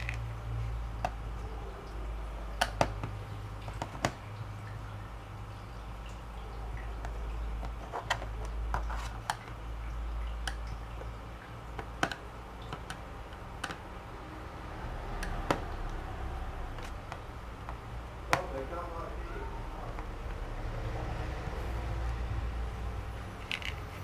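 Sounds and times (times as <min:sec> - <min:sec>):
screwdriver clicking on plastic: 0:00.0 - 0:00.2, 0:02.6 - 0:03.0, 0:07.6 - 0:09.6, 0:13.6 - 0:13.8, 0:16.8 - 0:17.2.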